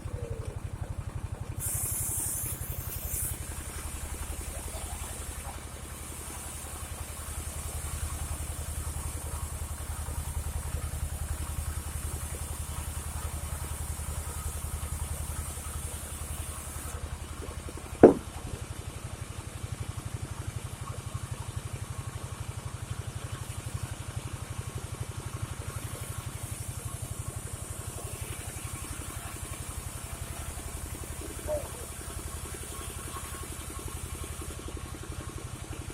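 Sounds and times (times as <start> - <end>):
sawmill engine running: 0.0 - 19.1.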